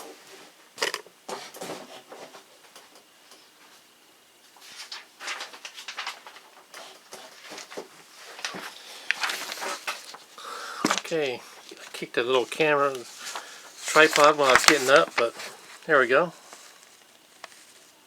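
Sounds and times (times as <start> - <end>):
paper rustling: 4.6 - 18.0.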